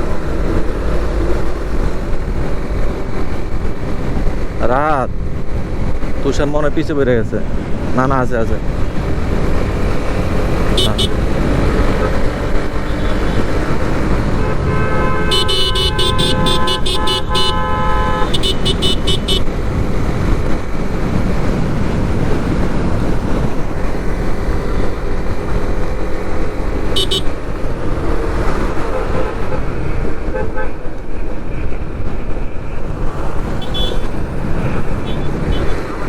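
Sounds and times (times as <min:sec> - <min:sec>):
motorcycle riding in traffic: 0:00.0 - 0:36.0
vehicle horn blaring: 0:10.7 - 0:11.2, 0:14.3 - 0:19.4, 0:27.0 - 0:27.3, 0:30.3 - 0:30.8, 0:33.6 - 0:34.1, 0:35.0 - 0:35.7.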